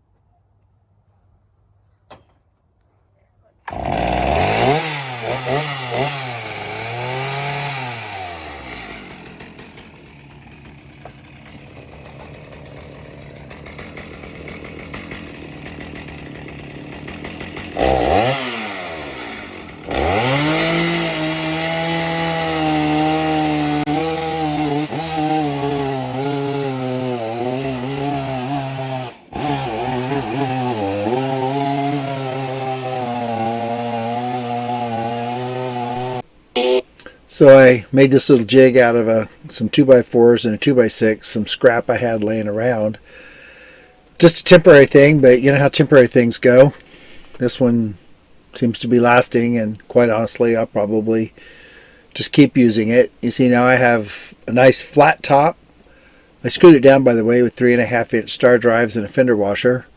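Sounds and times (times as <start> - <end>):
chainsaw revving and cutting log: 3.7 - 36.9.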